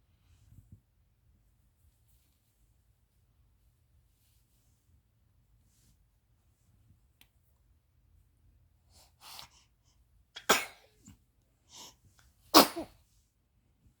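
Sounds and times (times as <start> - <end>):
person sneezing: 10.4 - 10.8, 12.6 - 12.9.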